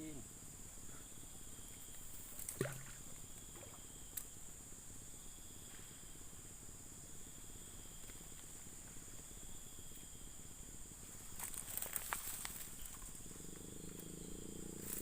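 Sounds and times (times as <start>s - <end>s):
faint background hiss: 0.0s - 15.0s
high-pitched insect drone: 11.7s - 15.0s.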